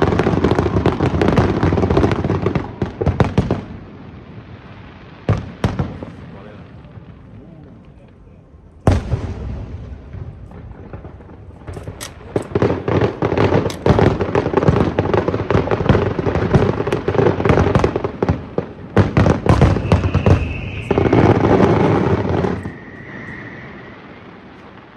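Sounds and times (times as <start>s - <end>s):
fireworks bangs and crackling: 0.0s - 24.9s
high steady whistle: 19.7s - 21.6s, 22.6s - 24.2s.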